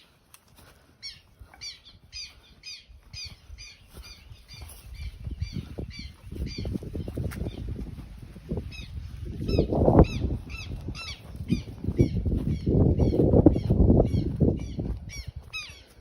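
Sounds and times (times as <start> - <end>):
bird squawking: 9.5 - 16.0.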